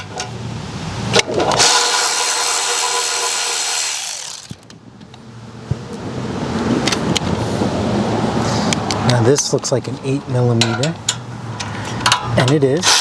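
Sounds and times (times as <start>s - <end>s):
cordless power driver running: 1.6s - 4.6s.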